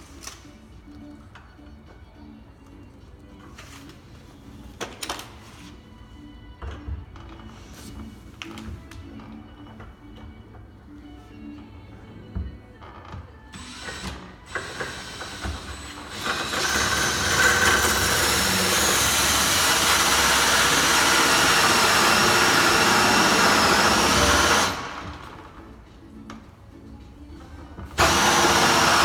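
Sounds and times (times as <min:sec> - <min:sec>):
power drill whining: 0:13.5 - 0:25.6, 0:28.0 - 0:29.0.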